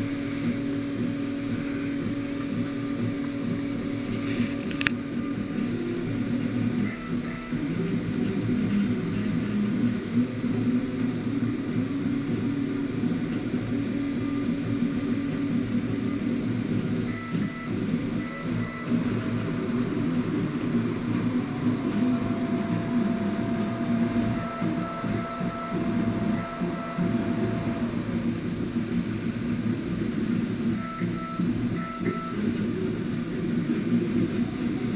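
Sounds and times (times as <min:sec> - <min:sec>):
stepper motors humming and whining: 0:00.0 - 0:34.9
steady tone: 0:12.4 - 0:30.6.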